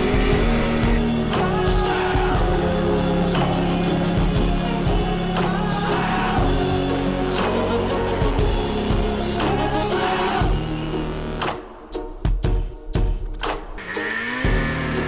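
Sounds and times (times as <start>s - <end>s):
steady drum beat: 0.0s - 10.9s, 11.5s - 13.8s
pop-rock song with singing: 0.0s - 11.1s.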